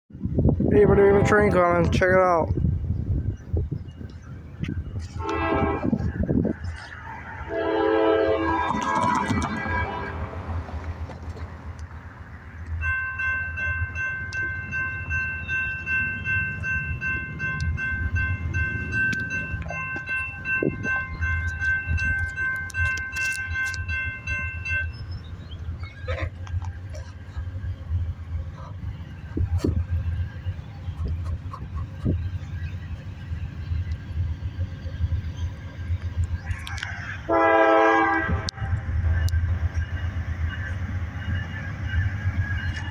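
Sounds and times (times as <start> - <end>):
freight train rumbling: 0.1 - 42.9
train bell ringing: 12.6 - 26.0, 37.3 - 42.9.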